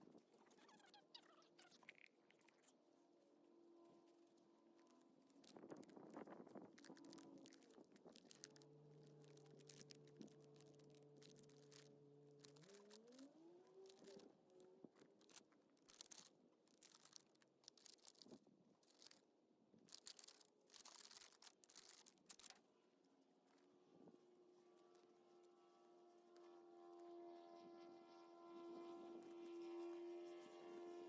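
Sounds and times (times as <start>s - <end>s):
plastic pots crinkling: 6.8s - 14.3s, 14.9s - 19.2s, 19.9s - 22.6s.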